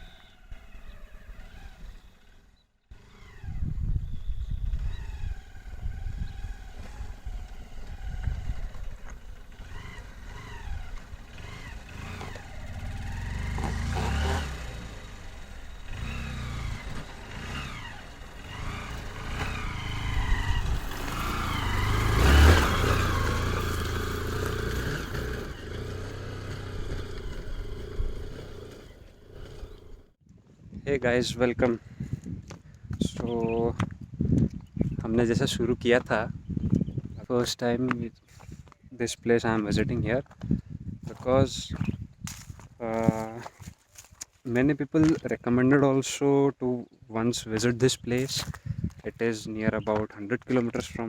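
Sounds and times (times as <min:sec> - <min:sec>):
motorcycle engine: 0:00.0 - 0:30.2
wind rumble on microphone: 0:03.2 - 0:13.5, 0:19.0 - 0:25.4, 0:26.0 - 0:44.1, 0:47.7 - 0:51.0.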